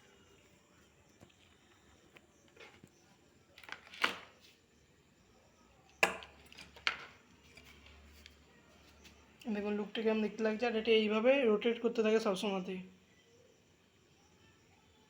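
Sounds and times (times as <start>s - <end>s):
small hard objects knocking: 3.6s - 4.4s, 6.0s - 8.3s.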